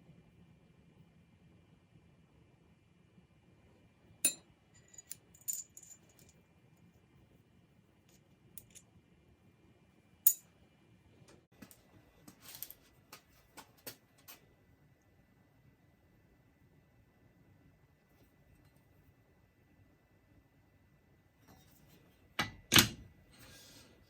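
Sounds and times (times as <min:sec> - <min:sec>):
metal parts clinking on hard surface: 0:04.3 - 0:06.4, 0:08.1 - 0:08.8.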